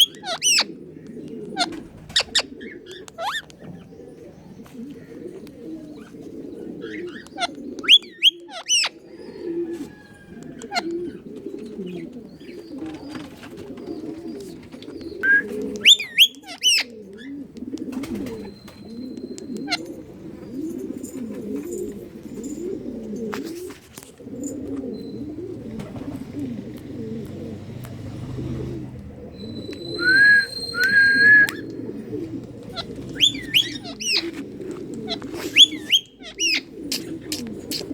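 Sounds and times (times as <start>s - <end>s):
pigeons cooing: 0.0s - 37.9s
bird whistles: 7.8s - 8.9s, 15.2s - 16.9s, 29.3s - 31.8s, 32.8s - 34.3s, 35.4s - 37.9s
shrill bird squawks: 29.3s - 31.7s, 32.7s - 34.3s, 35.5s - 37.8s.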